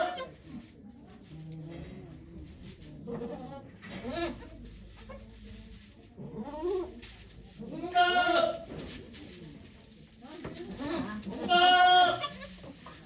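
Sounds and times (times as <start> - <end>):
goat bleating: 0.0 - 0.4, 7.7 - 8.6, 10.8 - 12.7.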